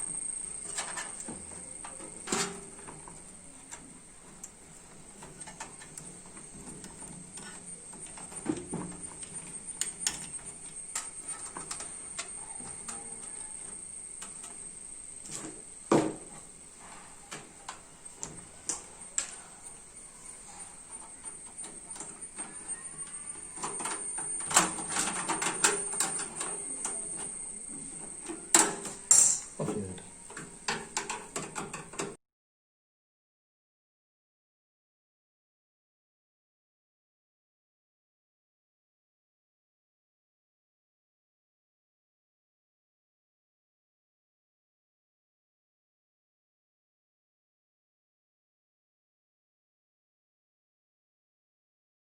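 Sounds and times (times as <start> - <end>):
steady high-pitched whine: 0.0 - 32.1.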